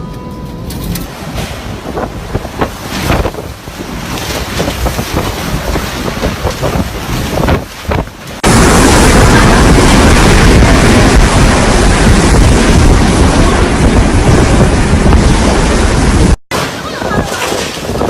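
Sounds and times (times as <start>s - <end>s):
gusting wind: 0.0s - 18.0s
wind buffeting microphone: 0.8s - 18.0s
rain: 1.1s - 18.0s.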